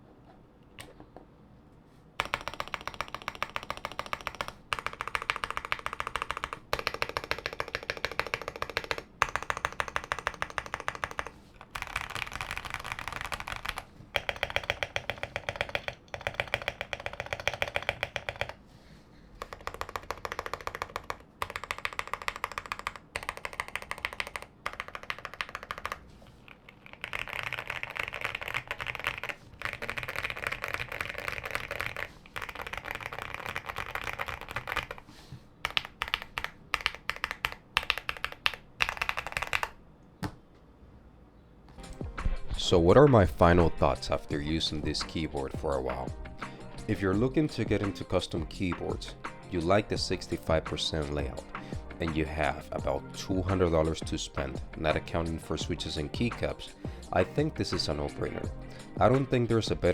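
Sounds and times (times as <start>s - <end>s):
mechanical keyboard typing: 2.2s - 18.6s, 19.4s - 39.8s.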